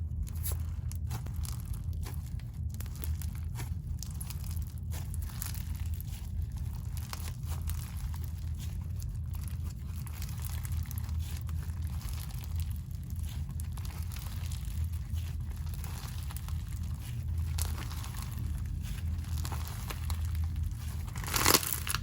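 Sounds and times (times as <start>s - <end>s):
crunchy slime crackling: 0.0s - 22.0s
low steady hum: 0.0s - 22.0s.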